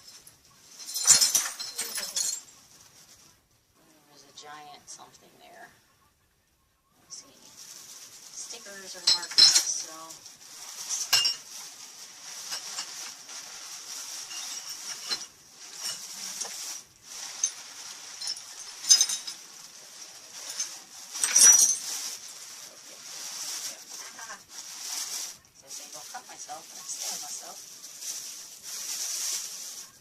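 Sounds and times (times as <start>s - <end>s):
broken glass clinking: 0.0s - 2.5s, 9.0s - 9.8s, 10.9s - 11.6s, 14.2s - 19.6s, 20.3s - 22.3s
steady rustling: 0.0s - 3.7s, 7.2s - 30.0s.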